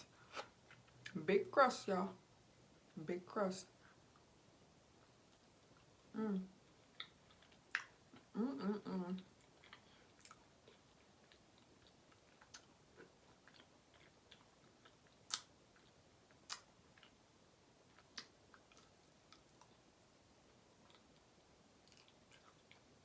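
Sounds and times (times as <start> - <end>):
chewing and wet mouth clicks: 6.9 - 8.2, 9.4 - 17.2, 17.9 - 19.8, 21.8 - 22.9.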